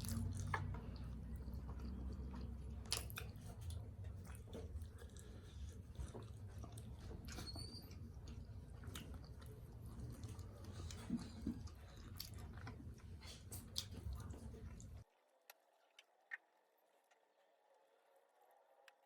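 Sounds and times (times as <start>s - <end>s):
person chewing: 0.0s - 15.0s.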